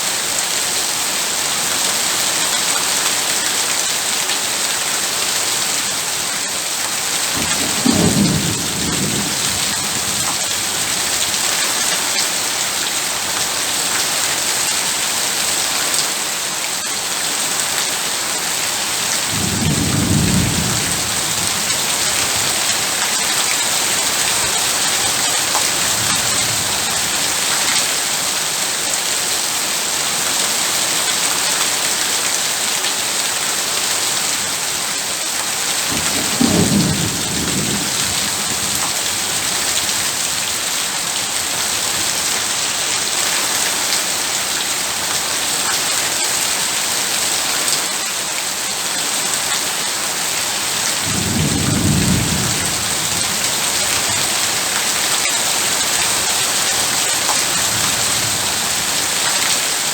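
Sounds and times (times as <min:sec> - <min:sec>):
heavy rain falling: 0:00.0 - 0:59.9
low rumbles of thunder: 0:07.3 - 0:11.2, 0:19.3 - 0:22.8, 0:35.9 - 0:40.1, 0:51.0 - 0:54.5.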